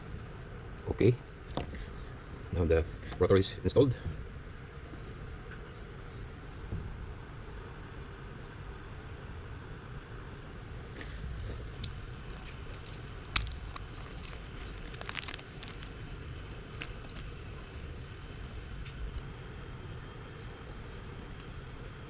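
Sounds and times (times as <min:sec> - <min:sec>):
low background rumble: 0:00.0 - 0:22.0.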